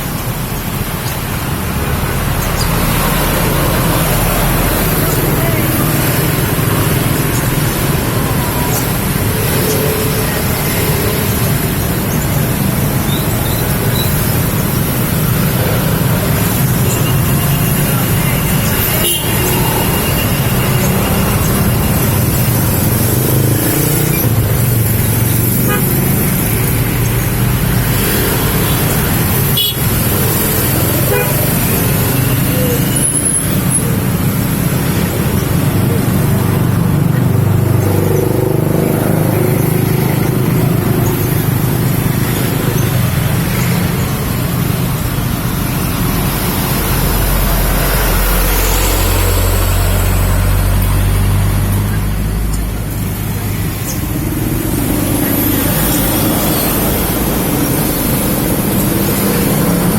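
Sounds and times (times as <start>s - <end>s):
loud rumbling background noise: 0.0s - 59.9s.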